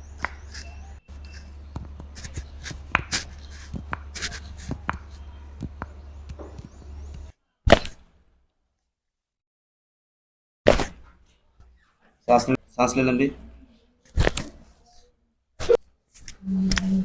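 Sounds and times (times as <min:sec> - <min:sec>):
low hum: 0:16.4 - 0:17.0.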